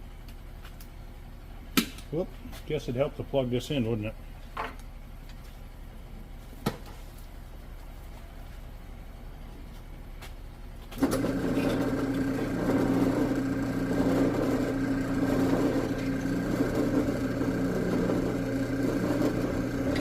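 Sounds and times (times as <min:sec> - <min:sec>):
drill press motor humming: 0:11.0 - 0:20.0.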